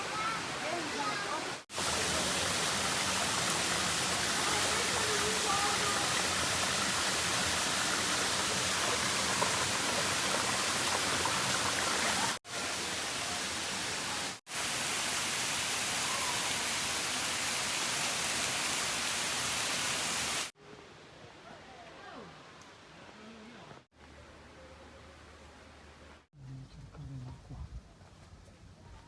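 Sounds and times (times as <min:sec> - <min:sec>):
waterfall roaring: 0:00.0 - 0:14.4.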